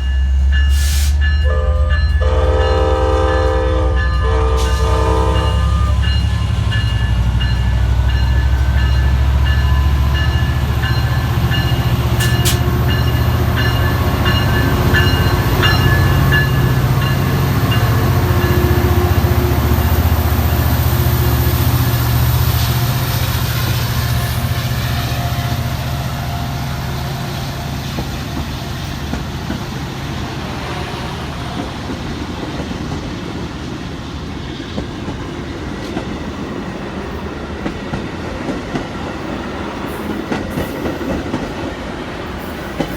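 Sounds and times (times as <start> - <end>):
train rumbling past: 0.0 - 42.9.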